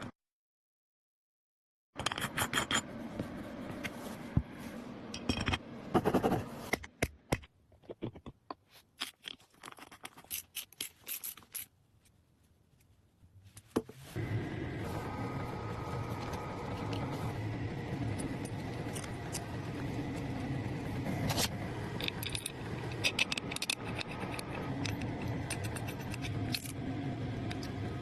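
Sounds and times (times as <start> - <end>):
scraping and scratching: 7.9 - 12.2, 21.0 - 27.9.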